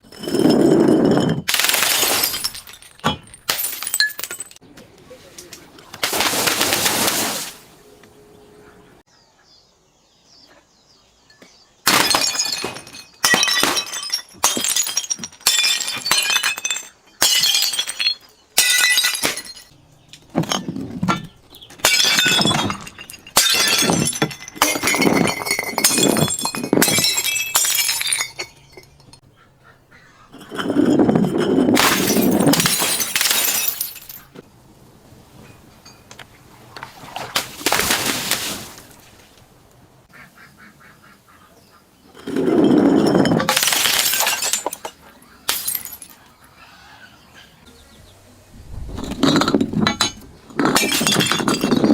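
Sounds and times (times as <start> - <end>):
glass bottles smashing: 0.0 - 4.6, 11.8 - 29.2, 30.4 - 34.4, 42.1 - 46.2, 48.9 - 51.9
glass shards tinkling: 0.0 - 4.6, 12.0 - 29.2, 30.4 - 34.4, 42.2 - 46.2, 49.0 - 51.9.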